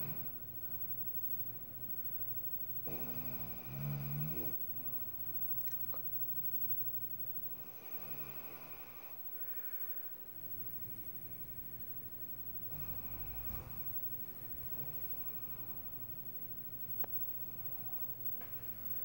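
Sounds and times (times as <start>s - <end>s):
woman snoring: 2.8s - 4.6s, 7.6s - 9.2s, 12.7s - 14.0s.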